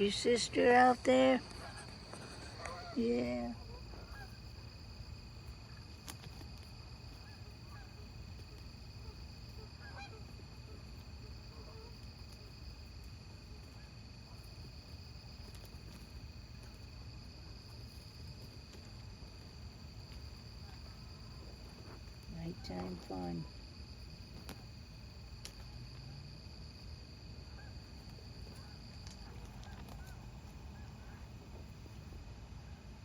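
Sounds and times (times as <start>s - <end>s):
faint short calls: 0.0s - 4.4s
crickets trilling: 0.0s - 33.0s.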